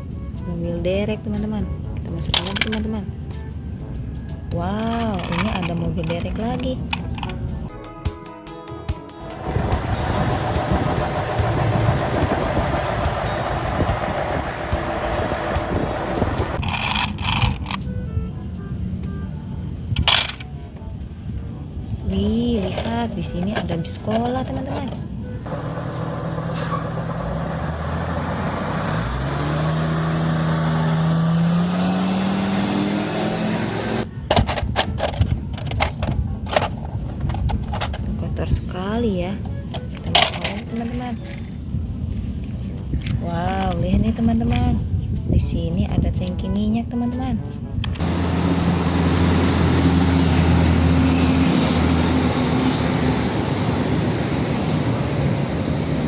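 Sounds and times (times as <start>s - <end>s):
bus engine idling and revving: 9.2s - 34.3s, 47.9s - 56.0s.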